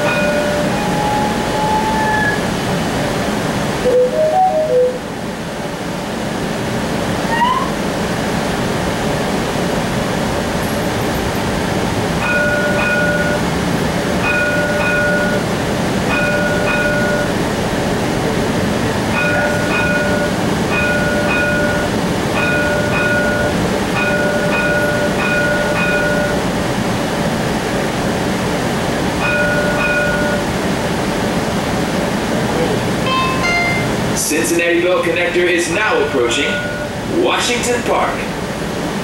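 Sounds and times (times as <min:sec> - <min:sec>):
streetcar warning bell ringing: 0:00.0 - 0:05.3, 0:10.6 - 0:27.0, 0:28.9 - 0:31.3, 0:32.9 - 0:38.1
streetcar running noise: 0:00.0 - 0:39.0.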